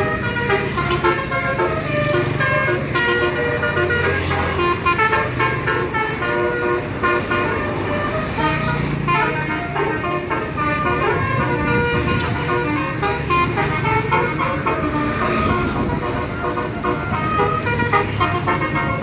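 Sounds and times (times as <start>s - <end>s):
musical bus horn tune: 0.0s - 19.0s.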